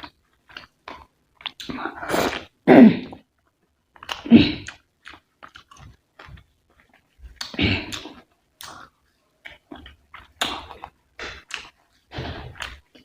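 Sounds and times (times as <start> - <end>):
close chewing and biting: 3.5 - 13.0.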